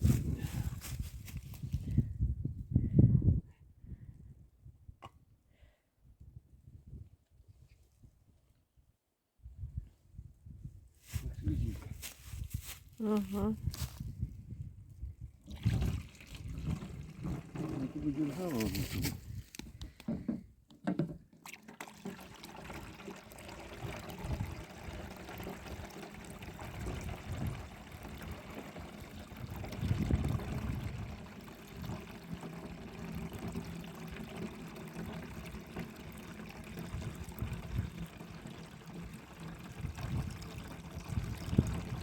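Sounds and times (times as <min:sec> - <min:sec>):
sap trickling into container: 0:15.4 - 0:42.0.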